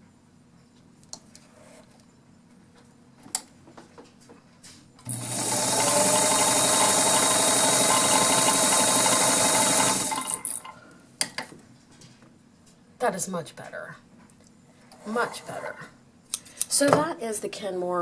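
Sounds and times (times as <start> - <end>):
sewing machine running: 5.0 - 10.6.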